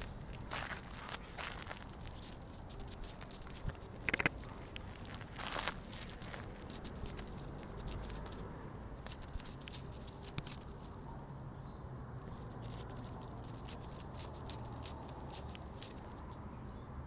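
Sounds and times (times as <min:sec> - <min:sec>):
fluttering wing clicks: 0:02.6 - 0:04.5.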